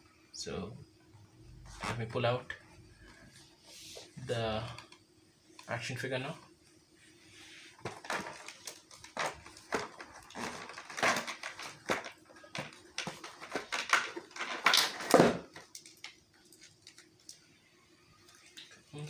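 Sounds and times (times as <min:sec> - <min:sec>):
packaging rustling and crinkling: 0:07.7 - 0:17.4.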